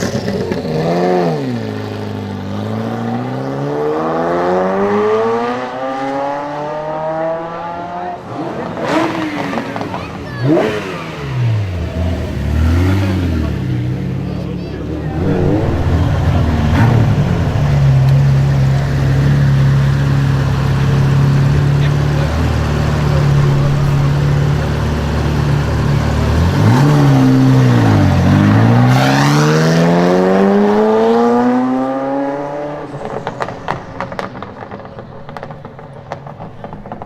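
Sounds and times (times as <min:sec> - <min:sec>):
sports car engine revving: 0:00.0 - 0:37.0
exhaust crackles and pops: 0:14.6 - 0:22.2, 0:33.1 - 0:37.0.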